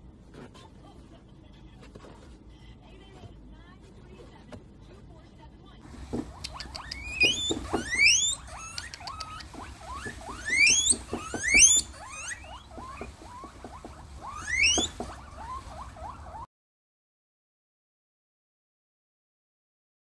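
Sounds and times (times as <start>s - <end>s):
high animal squeaks: 5.9s - 16.5s
small ticks: 6.3s - 11.9s.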